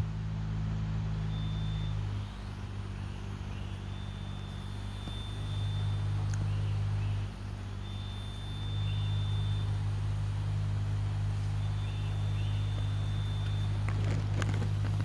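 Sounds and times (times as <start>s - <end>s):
engine running with low drone: 0.0s - 15.0s
sharp clicks: 6.2s - 6.6s.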